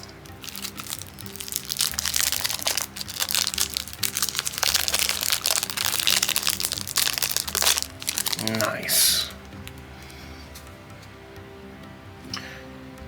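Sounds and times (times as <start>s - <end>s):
cellophane crinkling: 0.0s - 9.9s
background music: 0.0s - 13.0s.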